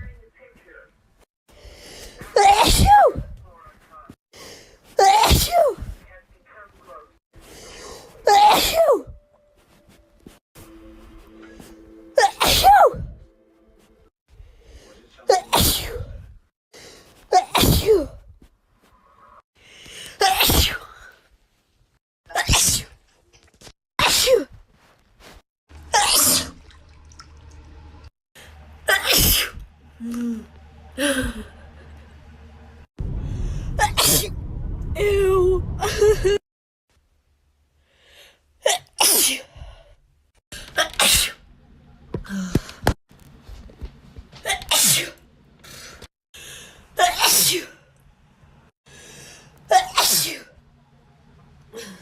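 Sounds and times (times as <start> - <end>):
woman breathing: 1.5 - 2.3, 4.3 - 4.9, 7.4 - 8.2, 19.6 - 20.2, 33.1 - 33.8, 37.8 - 38.5, 45.6 - 47.0, 48.8 - 49.6, 51.7 - 52.0
woman sneezing: 2.2 - 3.2, 5.0 - 6.0, 8.2 - 9.1, 12.2 - 13.1, 15.3 - 16.2, 17.3 - 18.2, 20.2 - 20.9, 22.3 - 23.0, 24.0 - 24.6, 25.9 - 26.5, 28.9 - 29.6, 38.6 - 39.5, 47.0 - 47.7, 49.7 - 50.5.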